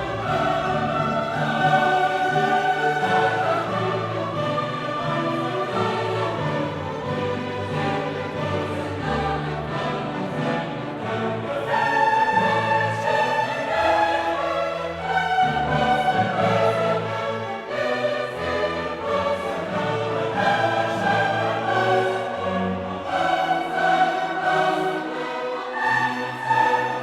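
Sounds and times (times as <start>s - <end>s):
orchestral music with choir: 0.0s - 27.0s.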